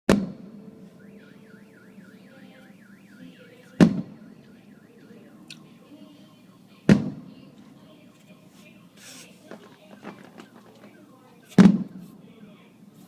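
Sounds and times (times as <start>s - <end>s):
car alarm warbling: 0.2s - 12.7s
firework bursting with boom: 3.8s - 4.2s, 11.6s - 12.0s.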